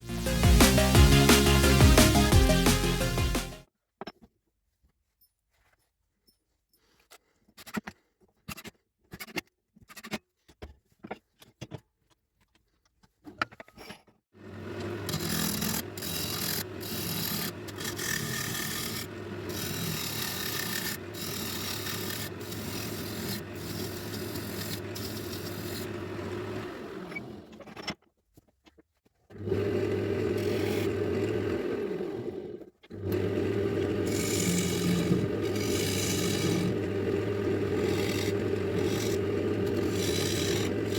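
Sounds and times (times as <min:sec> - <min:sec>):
wood lathe humming: 0:14.4 - 0:27.6, 0:29.4 - 0:40.9
tool scraping wood: 0:14.8 - 0:27.8, 0:30.2 - 0:31.6, 0:32.2 - 0:40.9.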